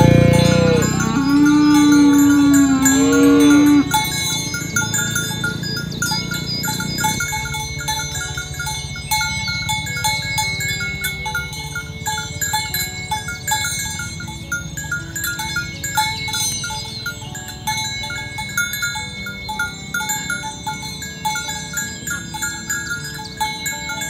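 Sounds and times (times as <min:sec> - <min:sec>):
cow mooing: 0:00.0 - 0:05.5
cattle bells ringing: 0:00.0 - 0:24.0.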